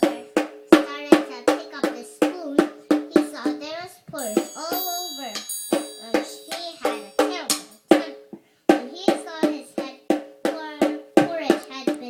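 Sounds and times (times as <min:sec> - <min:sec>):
drum hits: 0:00.0 - 0:12.0
struck pitched notes: 0:02.2 - 0:08.1.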